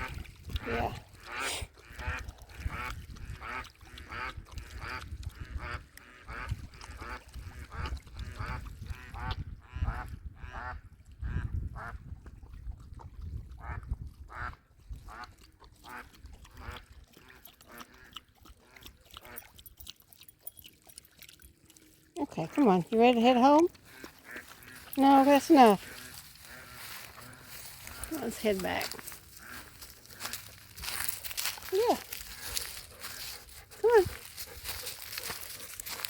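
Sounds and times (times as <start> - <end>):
wind rumble on microphone: 0.0 - 1.1, 2.0 - 15.3
waterfowl honking quacks: 1.1 - 11.9, 22.2 - 36.0.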